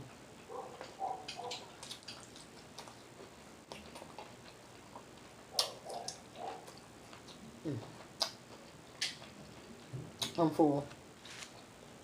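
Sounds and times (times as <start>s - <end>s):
wet lip smacks while chewing: 0.8s - 3.0s, 3.7s - 9.4s.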